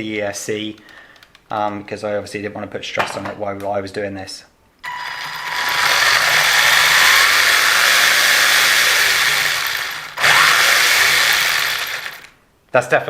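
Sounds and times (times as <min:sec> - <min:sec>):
electric motor whining: 0:04.9 - 0:12.3.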